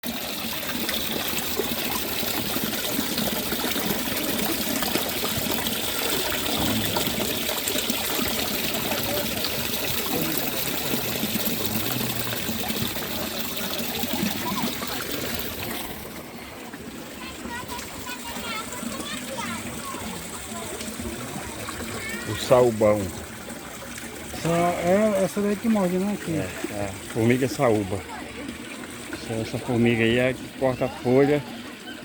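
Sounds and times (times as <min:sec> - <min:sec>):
running water trickling: 0:00.0 - 0:32.0.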